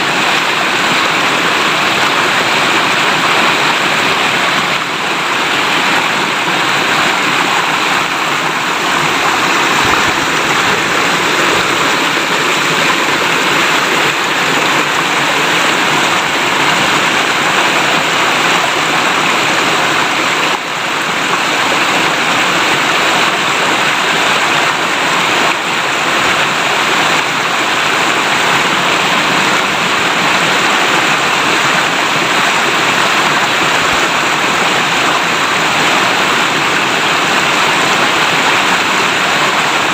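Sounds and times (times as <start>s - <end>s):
river water flowing and babbling: 0.0s - 39.9s.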